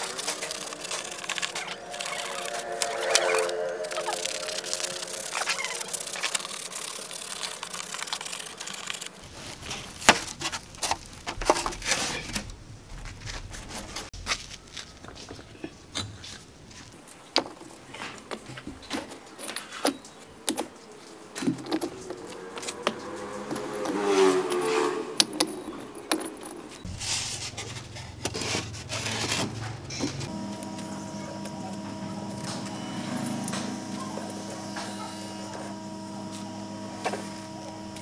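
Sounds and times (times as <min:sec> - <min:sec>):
tools clicking tapping and scraping: 0:18.3 - 0:26.9.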